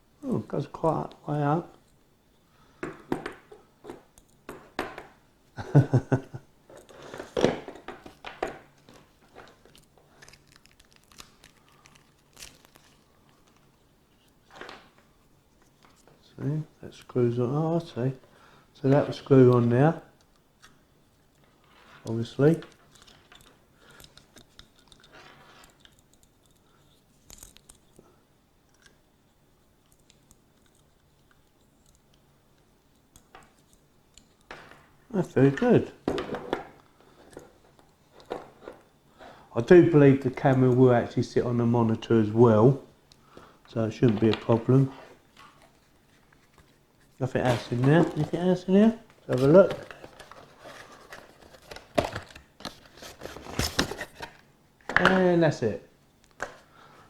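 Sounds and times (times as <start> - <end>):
soft plastic rustle: 6.7 - 20.8, 21.4 - 28.1, 42.7 - 55.2
packaging crinkling: 6.9 - 13.8, 44.1 - 55.2.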